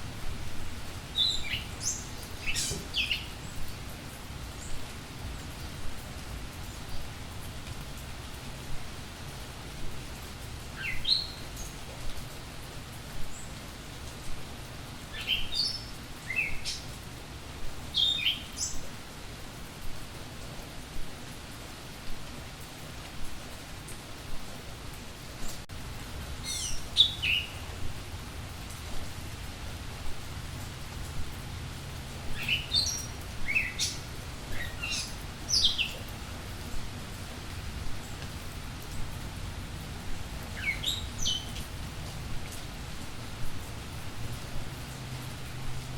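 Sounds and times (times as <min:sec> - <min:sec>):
rain hiss: 0:00.0 - 0:45.9
songbird chirping: 0:00.2 - 0:05.6, 0:10.6 - 0:12.3, 0:15.1 - 0:17.0, 0:17.8 - 0:18.9, 0:26.3 - 0:28.0, 0:32.2 - 0:36.2, 0:40.4 - 0:41.7
bird chirping: 0:01.1 - 0:03.6, 0:26.4 - 0:27.6, 0:32.4 - 0:36.0, 0:40.6 - 0:41.6.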